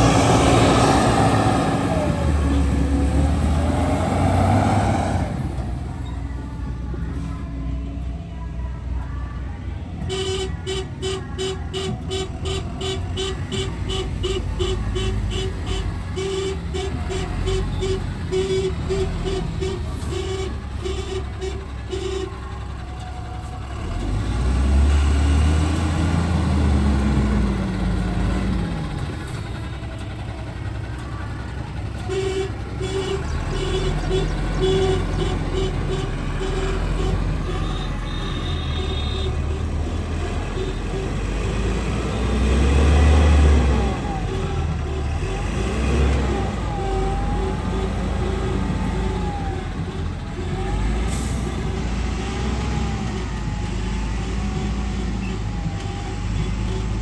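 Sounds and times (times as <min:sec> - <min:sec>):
diesel truck engine revving: 0:00.0 - 0:57.0
reverse alarm beeping: 0:32.2 - 0:39.8.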